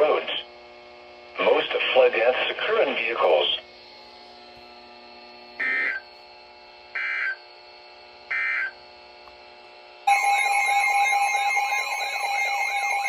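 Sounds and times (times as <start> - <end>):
warbling alarm tone: 5.6 - 6.1, 7.0 - 7.4, 8.3 - 8.8, 10.1 - 13.0.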